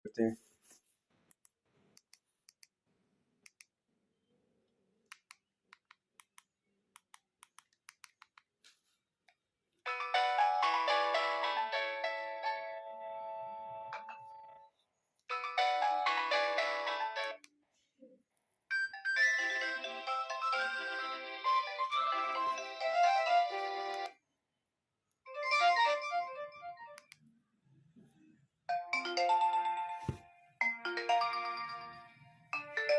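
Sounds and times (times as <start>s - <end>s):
mobile phone ringtone melody: 9.9s - 14.6s, 15.3s - 17.4s, 18.7s - 24.1s, 28.7s - 32.9s.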